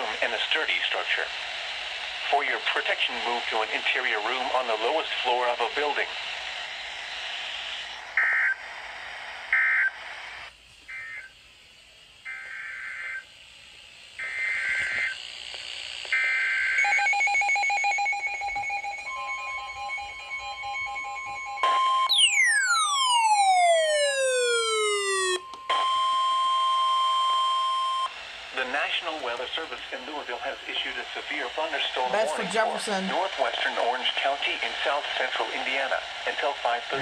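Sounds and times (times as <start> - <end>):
chirping data bursts: 8.1 - 11.3, 12.2 - 13.3, 14.2 - 15.2, 18.0 - 25.4
steady alert tones: 19.0 - 25.6.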